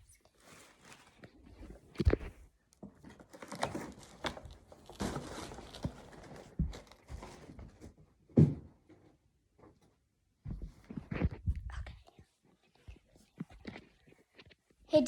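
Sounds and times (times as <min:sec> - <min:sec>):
basket being handled: 0:00.0 - 0:08.6.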